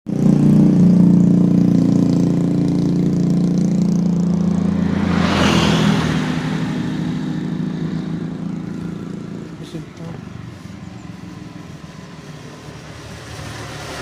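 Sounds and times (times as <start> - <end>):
locomotive engine drone: 0.1 - 14.0
rush of noise: 3.8 - 14.0.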